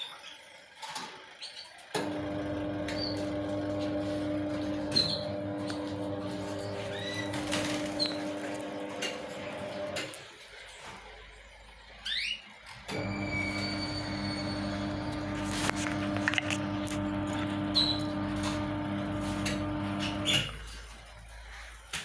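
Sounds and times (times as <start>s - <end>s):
rising squeaks: 2.7s - 10.0s, 12.9s - 20.7s
steady hum: 12.9s - 20.6s.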